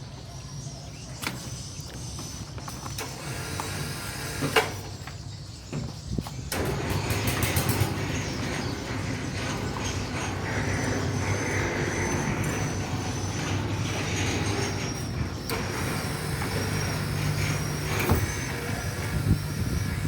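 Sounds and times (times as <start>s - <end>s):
large engine humming: 6.5s - 20.0s.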